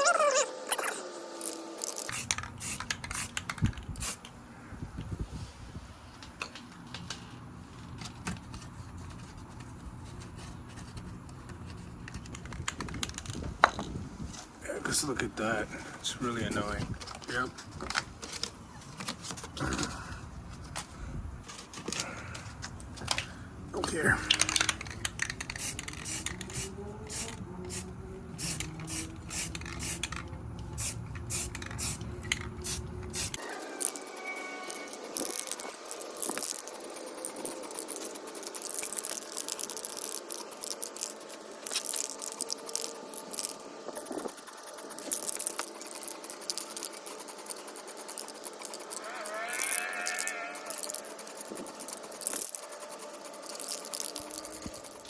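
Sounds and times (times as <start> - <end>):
wind rumbling on microphone: 4.6 - 6.1, 12.5 - 14.4
hissing strokes on wheel rims: 25.4 - 30.2, 30.8 - 55.0.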